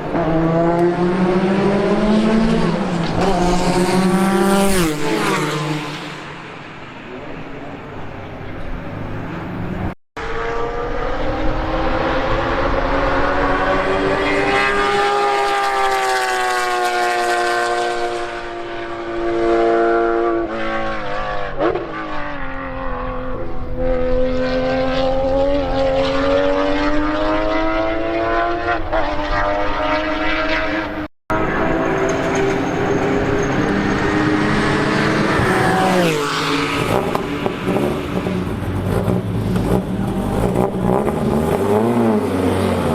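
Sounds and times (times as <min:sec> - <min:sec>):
race car engine running hard: 0:36.8 - 0:42.9.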